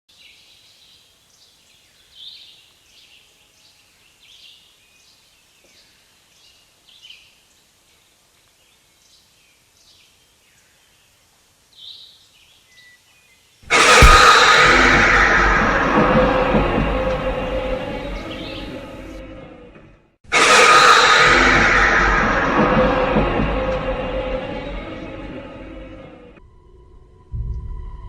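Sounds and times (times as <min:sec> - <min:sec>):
loud harsh jumpscare blast: 0:13.7 - 0:19.2, 0:20.3 - 0:26.3.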